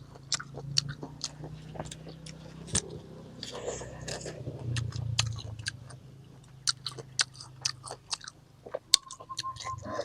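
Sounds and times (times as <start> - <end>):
chewing crisp mango: 0.0 - 9.4.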